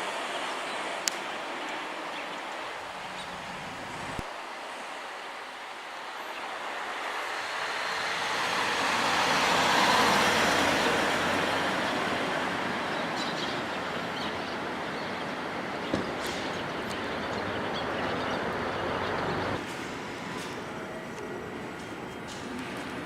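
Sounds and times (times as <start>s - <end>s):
vehicle passing by: 7.2s - 19.6s.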